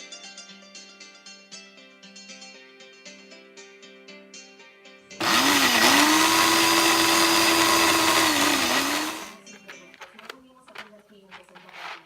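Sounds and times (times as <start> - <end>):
plucked-string background music: 0.0 - 5.2
blender motor whine: 5.2 - 9.4.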